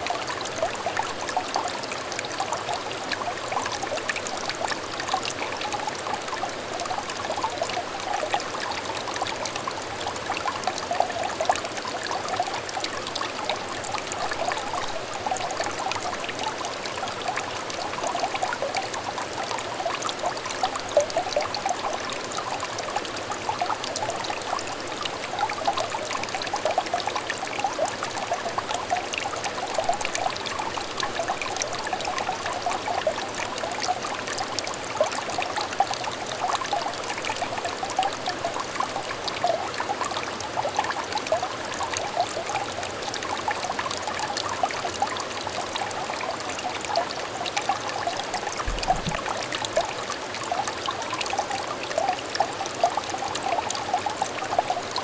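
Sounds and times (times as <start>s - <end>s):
stream trickling and babbling: 0.0s - 55.0s.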